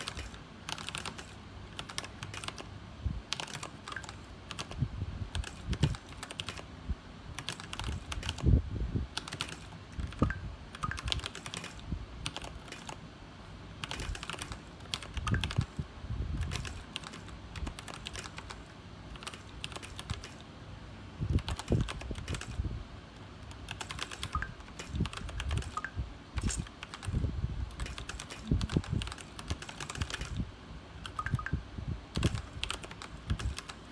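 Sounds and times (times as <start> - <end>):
mechanical keyboard key clicks: 0.0 - 2.7, 3.3 - 6.6, 9.1 - 13.0, 13.8 - 15.8, 16.4 - 20.4, 21.3 - 22.6, 23.4 - 30.4, 31.0 - 33.8.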